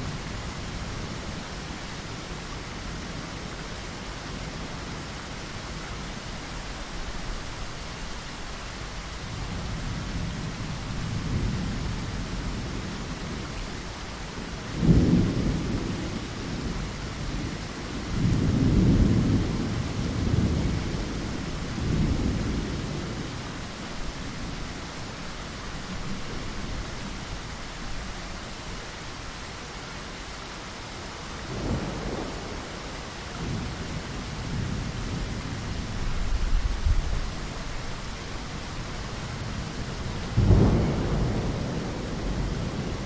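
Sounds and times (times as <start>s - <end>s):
steady rain: 0.0s - 43.0s
thunder clap and rumbles: 14.7s - 23.4s, 31.5s - 37.4s, 39.4s - 43.0s.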